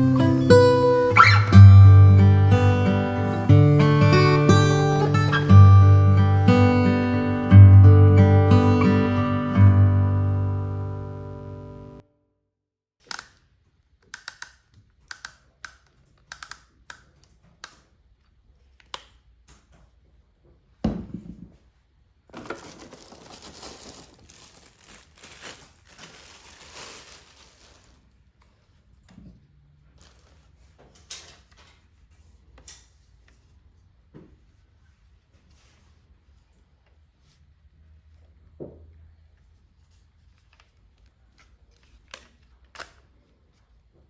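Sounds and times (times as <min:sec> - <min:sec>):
crinkling rustle: 0:22.3 - 0:28.7, 0:29.9 - 0:31.8.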